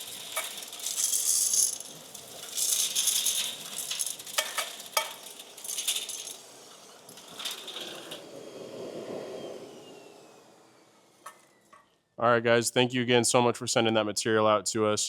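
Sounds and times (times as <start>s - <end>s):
metal chips rattling in vacuum hose: 0.0s - 8.2s
industrial vacuum running: 3.8s - 11.8s.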